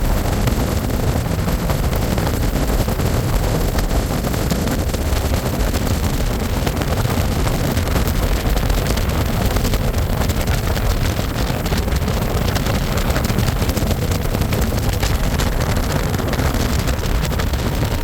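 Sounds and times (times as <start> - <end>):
motorboat engine and water rush: 0.0 - 18.0
wind buffeting microphone: 0.0 - 18.0.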